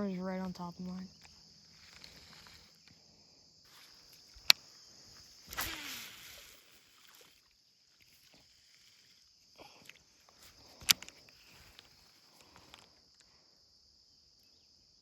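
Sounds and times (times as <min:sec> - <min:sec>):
insects buzzing: 0:00.0 - 0:15.0
sharp loud click: 0:05.4 - 0:06.2.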